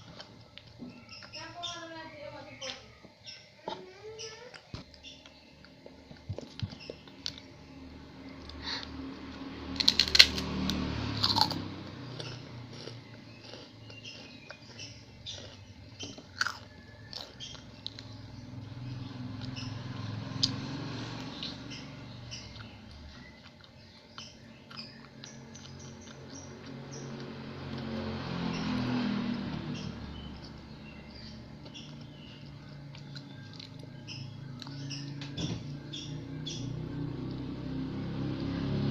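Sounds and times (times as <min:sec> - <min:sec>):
crunchy food being chewed: 0:00.0 - 0:01.4, 0:04.4 - 0:07.5, 0:09.8 - 0:18.3, 0:20.4 - 0:35.1
small birds chirping: 0:00.0 - 0:38.9
vehicle passing: 0:06.7 - 0:38.9.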